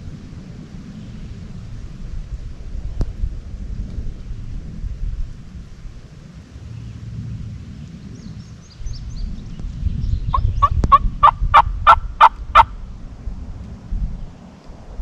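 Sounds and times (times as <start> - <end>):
turkey gobbling: 10.3 - 12.7.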